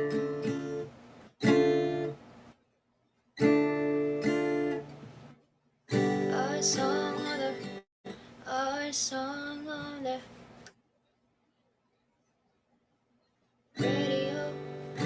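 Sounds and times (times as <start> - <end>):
acoustic guitar strumming chords: 5.9 - 7.8, 13.8 - 15.0.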